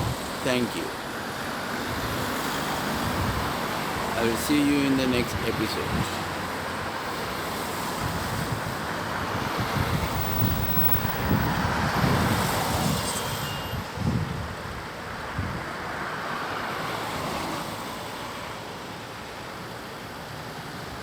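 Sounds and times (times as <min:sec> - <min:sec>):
wind buffeting microphone: 0:03.0 - 0:04.2, 0:08.0 - 0:13.1, 0:13.8 - 0:15.7.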